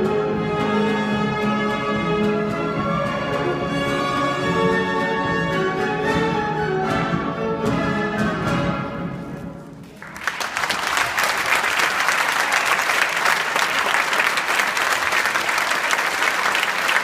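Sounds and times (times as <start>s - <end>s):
orchestral music: 0.0s - 10.0s
audience applauding: 9.8s - 17.0s.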